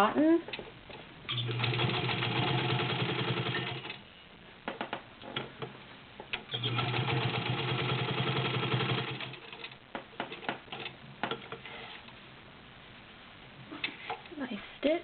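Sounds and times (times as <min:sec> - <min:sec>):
sewing machine running: 0:01.3 - 0:04.0, 0:06.5 - 0:09.8
clicks and knocks: 0:04.6 - 0:06.4, 0:09.9 - 0:11.6.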